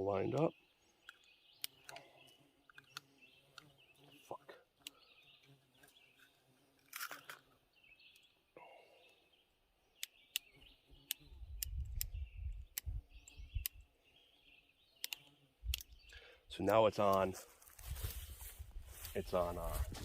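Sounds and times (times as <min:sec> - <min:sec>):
birds chirping: 0:00.0 - 0:20.0
revolver cylinder clicks: 0:15.0 - 0:15.9.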